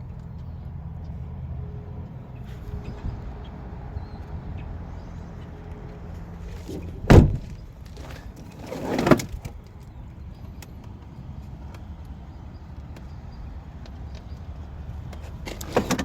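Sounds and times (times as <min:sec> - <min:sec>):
vehicle door shutting: 0:06.6 - 0:09.6, 0:15.2 - 0:16.0.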